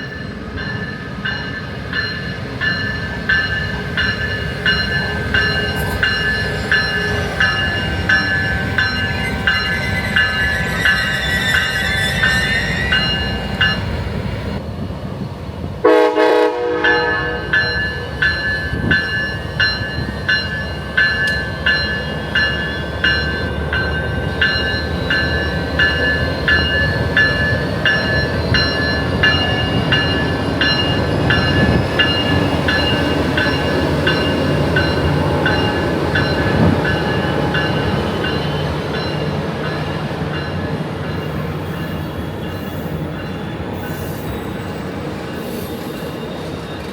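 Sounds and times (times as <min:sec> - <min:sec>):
bell ringing: 0:00.0 - 0:14.0, 0:16.8 - 0:46.9
train rumbling: 0:00.0 - 0:46.9
train horn blast: 0:15.8 - 0:17.8.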